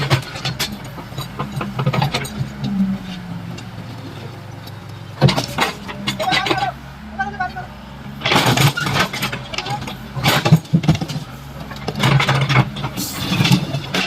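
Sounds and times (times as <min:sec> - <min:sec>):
excavator diesel engine running: 0:00.0 - 0:14.0.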